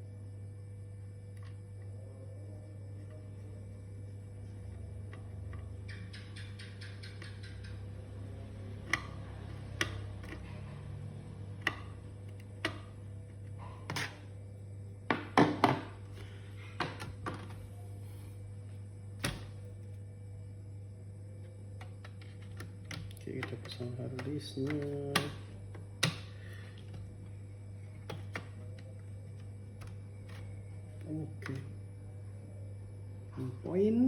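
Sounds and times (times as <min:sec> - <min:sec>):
steady low hum: 0:00.0 - 0:34.0
small laptop parts clicking: 0:21.8 - 0:27.0.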